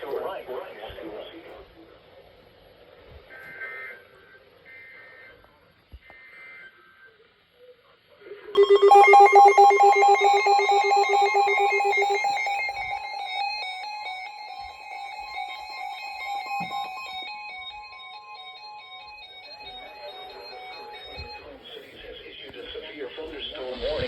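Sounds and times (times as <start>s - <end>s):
loud pulsing electronic alert tone: 8.6s - 14.5s
warbling digital data tones: 8.6s - 14.6s.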